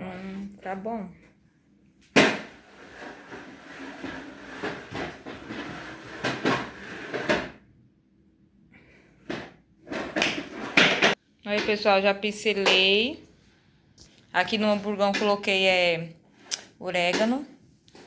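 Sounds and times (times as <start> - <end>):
kitchen items clattering and rubbing: 2.2 - 7.7, 8.8 - 12.0.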